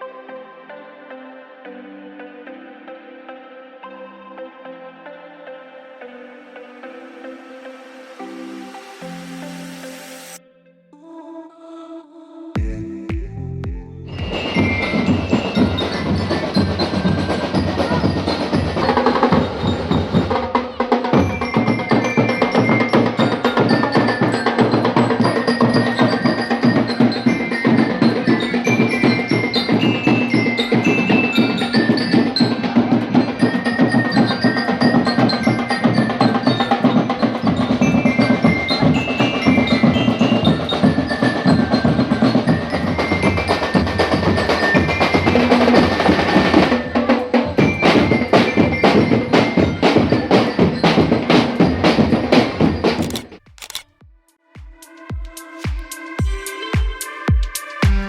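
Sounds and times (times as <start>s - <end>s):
steady percussion beat: 12.6s - 58.0s
bell-like mallet notes: 14.1s - 53.0s.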